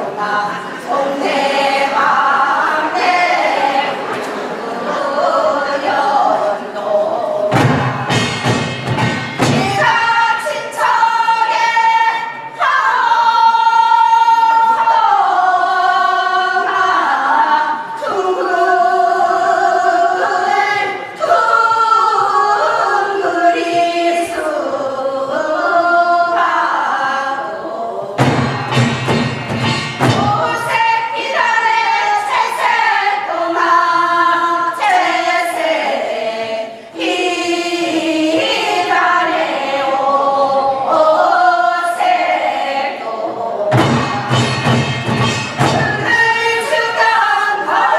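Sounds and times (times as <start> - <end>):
group singing folk song: 0.0 - 47.9
sharp drum strokes: 7.5 - 10.6, 28.2 - 32.7, 43.7 - 47.0.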